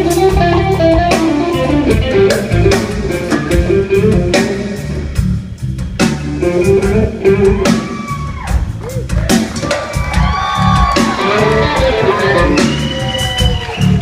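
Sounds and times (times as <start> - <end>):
electric lead guitar: 0.0 - 5.2, 6.0 - 8.3, 11.0 - 13.1
bass guitar: 0.0 - 14.0
drums: 0.0 - 14.0.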